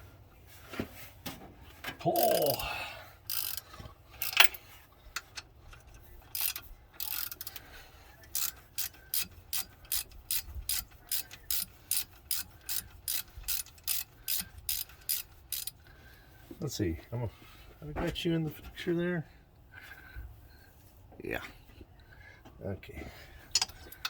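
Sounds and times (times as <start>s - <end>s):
ratchet clicking: 2.2s - 2.6s, 3.3s - 4.6s, 5.2s - 7.6s, 8.2s - 15.8s.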